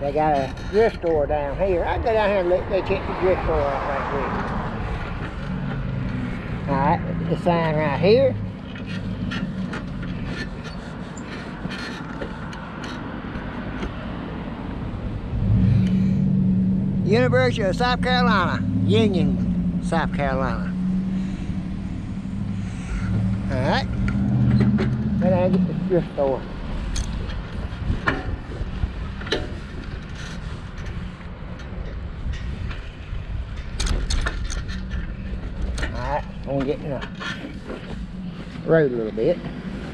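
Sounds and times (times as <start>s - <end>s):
bike rattles and clicks: 0.0s - 6.8s, 7.4s - 15.2s, 21.2s - 39.9s
wind: 0.0s - 39.9s
bicycle tyres rumbling: 7.4s - 16.9s, 20.8s - 39.9s
wind buffeting microphone: 20.7s - 36.5s
rattling clicks: 33.6s - 38.0s
bicycle tyres on pavement: 34.4s - 39.9s.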